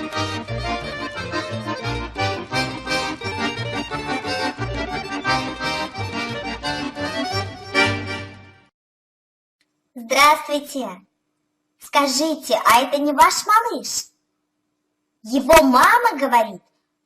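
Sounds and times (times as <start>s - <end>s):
steady bass beat: 0.0s - 8.0s
cheerful accordion tune: 0.0s - 8.7s.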